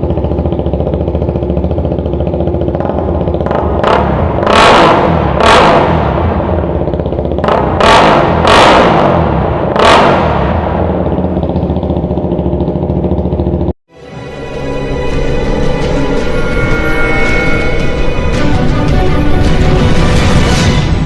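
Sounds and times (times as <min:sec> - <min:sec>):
motorcycle engine idling and revving: 0:00.0 - 0:21.0.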